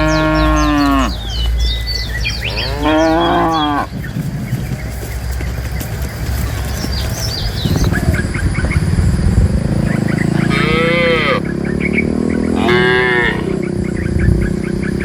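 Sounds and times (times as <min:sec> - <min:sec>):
cattle mooing: 0:00.0 - 0:01.3, 0:02.4 - 0:03.9, 0:10.3 - 0:11.5, 0:12.4 - 0:13.6.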